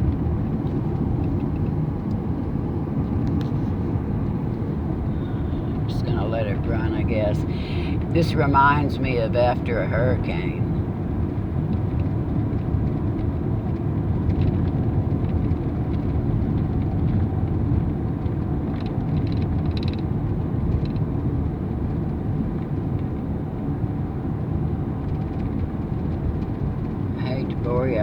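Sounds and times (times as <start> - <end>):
car engine and tyre rumble: 0.0 - 28.0.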